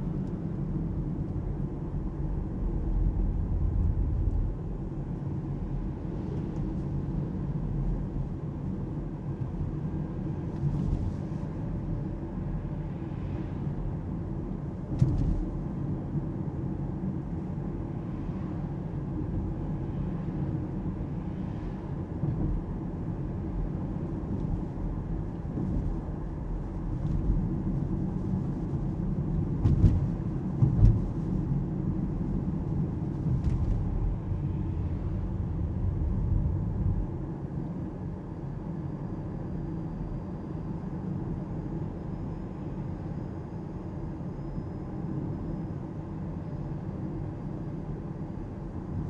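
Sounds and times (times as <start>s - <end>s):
car thumping over bumps: 15.0s - 15.6s, 29.3s - 34.2s.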